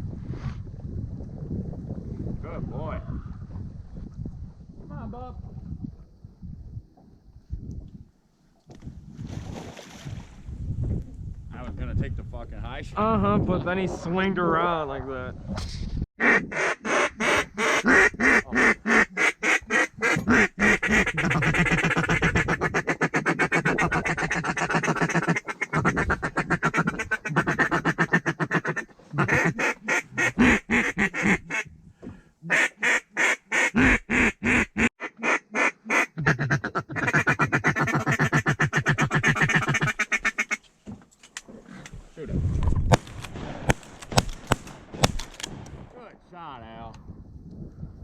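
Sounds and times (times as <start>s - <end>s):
duck call quacks: 16.2s - 31.6s, 32.5s - 40.6s.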